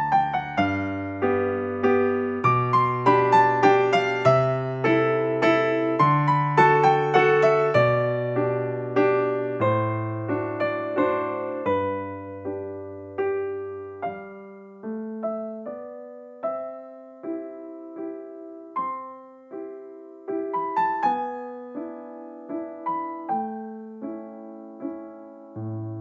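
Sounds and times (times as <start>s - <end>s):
gentle electric piano melody: 0.0s - 26.0s.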